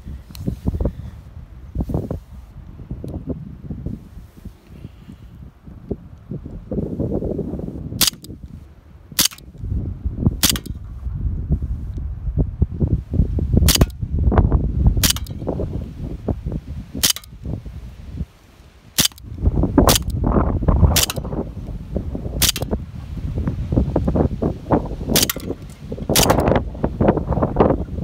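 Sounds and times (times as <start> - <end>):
wind noise on microphone: 0.0 - 28.0
pistol shots cracking: 9.2 - 9.4, 10.4 - 10.7, 17.0 - 17.3, 19.0 - 19.2, 19.9 - 20.1, 21.0 - 21.2, 22.4 - 22.7, 26.2 - 26.5.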